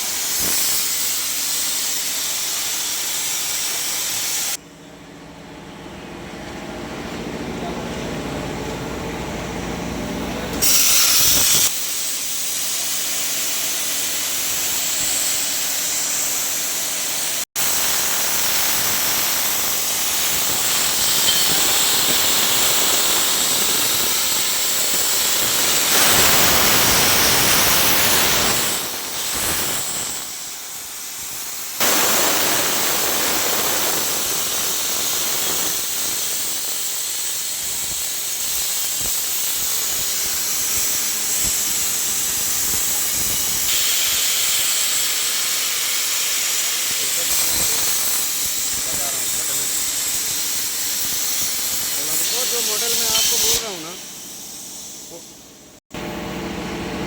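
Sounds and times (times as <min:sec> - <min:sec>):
plasma cutter hissing: 0:00.0 - 0:04.6, 0:10.5 - 0:55.8.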